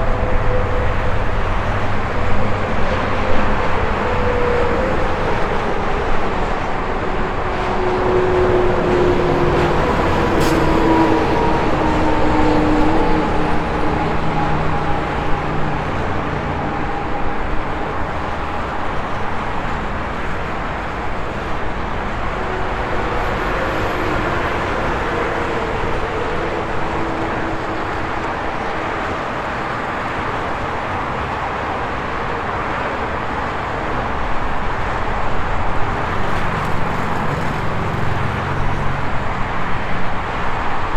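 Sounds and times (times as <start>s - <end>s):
highway traffic rushing: 0.0s - 40.9s
vehicle engine hums: 0.0s - 40.9s.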